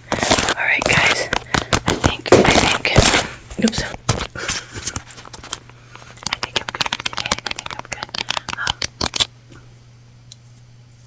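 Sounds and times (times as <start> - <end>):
small hard objects clicking and rattling: 4.9 - 9.3.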